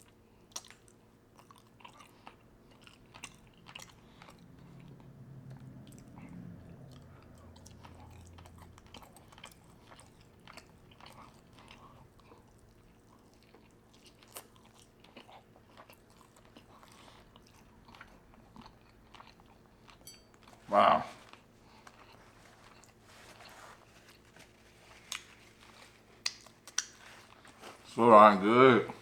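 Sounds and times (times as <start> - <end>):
chewing food: 0.0 - 28.0
wet mouth clicks: 26.2 - 27.0.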